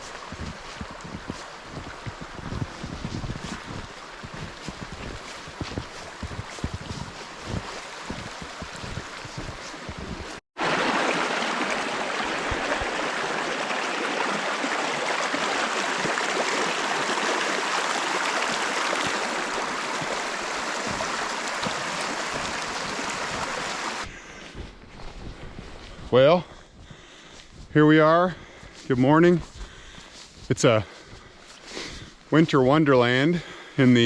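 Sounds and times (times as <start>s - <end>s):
creek rushing: 0.0s - 24.1s
wind buffeting microphone: 0.2s - 10.4s.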